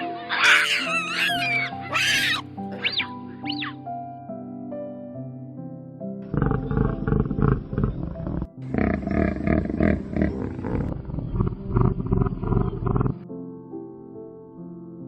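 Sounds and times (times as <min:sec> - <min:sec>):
background music: 0:00.0 - 0:15.0
large animal deep rough calls: 0:06.3 - 0:13.2.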